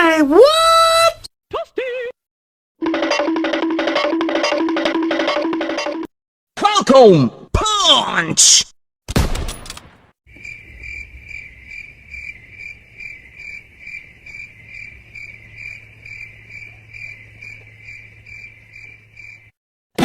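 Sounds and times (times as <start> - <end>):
crickets chirping: 10.3 - 19.5.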